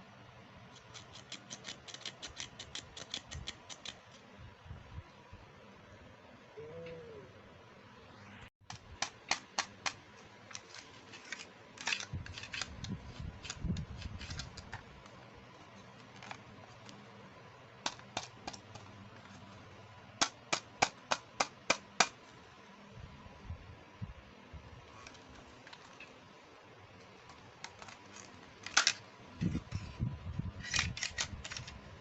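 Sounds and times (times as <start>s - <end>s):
sharp plastic clicks: 0.8s - 4.2s, 8.6s - 15.2s, 17.8s - 18.9s, 27.2s - 29.6s, 30.6s - 31.8s
handling rustle: 10.0s - 17.3s, 24.8s - 31.8s.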